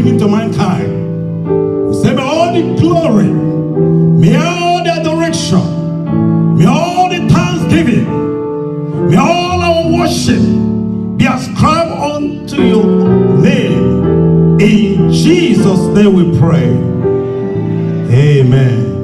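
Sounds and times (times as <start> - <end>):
sustained keyboard chords: 0.0 - 19.0.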